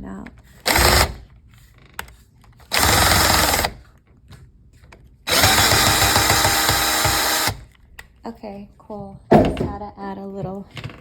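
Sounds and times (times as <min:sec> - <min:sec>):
power drill running: 0:00.6 - 0:01.3, 0:02.7 - 0:03.8, 0:05.3 - 0:07.7.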